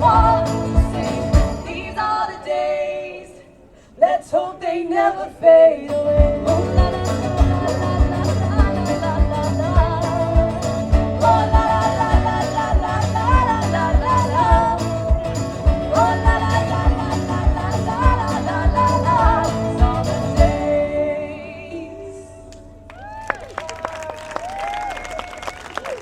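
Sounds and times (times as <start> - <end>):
steady drum beat: 0.0 - 1.7, 6.2 - 20.6
live band melody: 0.0 - 1.8, 6.2 - 20.8.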